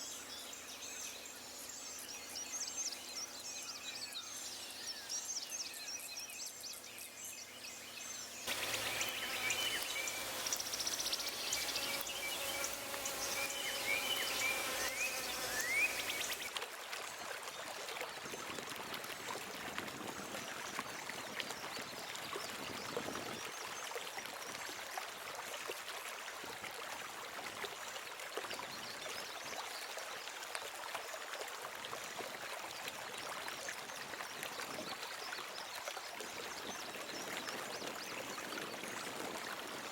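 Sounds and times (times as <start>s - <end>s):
faint thin high whine: 8.4s - 16.5s
chirping and whistling animal calls: 8.5s - 16.5s
hiss: 8.5s - 16.5s.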